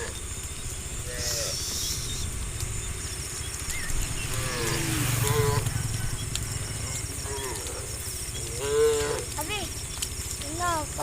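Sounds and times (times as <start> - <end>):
outdoor background noise: 0.0 - 11.0
people's voices: 4.4 - 11.0.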